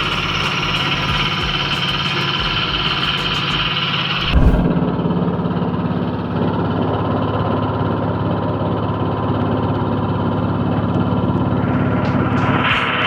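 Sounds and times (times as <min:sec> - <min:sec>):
machine mechanical hum: 0:02.4 - 0:04.9.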